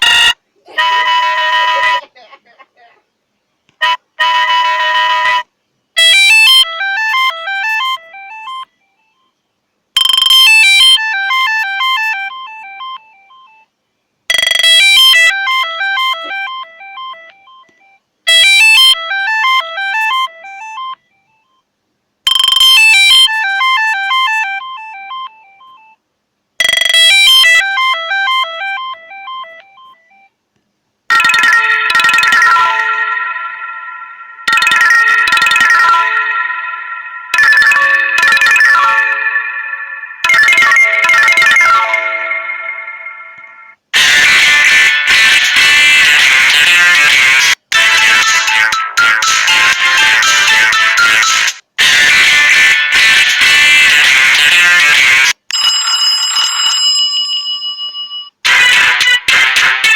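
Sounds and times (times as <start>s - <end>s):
different ringtone: 0.0s - 2.0s, 3.8s - 9.3s, 10.0s - 13.7s, 14.3s - 21.6s, 22.3s - 26.0s, 26.6s - 30.3s, 31.1s - 59.9s
phone ringtone melody: 0.0s - 2.0s, 3.8s - 9.3s, 10.0s - 13.6s, 14.3s - 21.6s, 22.3s - 26.0s, 26.6s - 30.3s, 31.1s - 59.9s.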